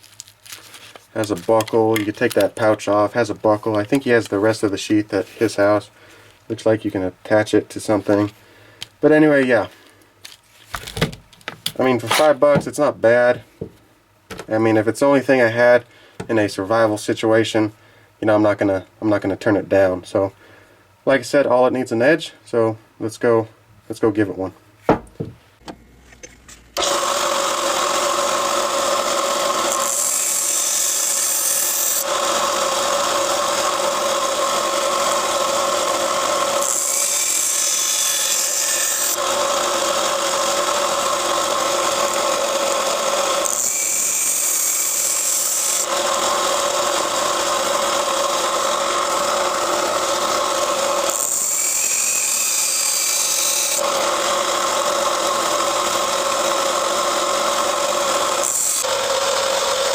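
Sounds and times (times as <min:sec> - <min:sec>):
belt sander grinding knife blade: 0:26.8 - 0:59.9.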